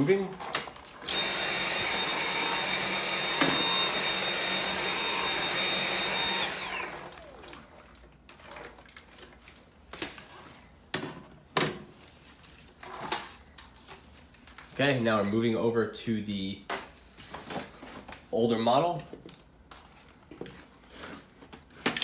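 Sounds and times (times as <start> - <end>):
motor whine winding down: 1.0 - 7.5
cordless vacuum running: 1.0 - 7.9.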